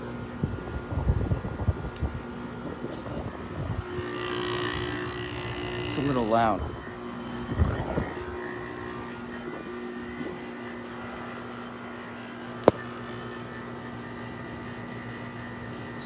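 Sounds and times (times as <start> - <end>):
air conditioner humming: 0.0 - 16.0
sharp click: 12.6 - 12.9.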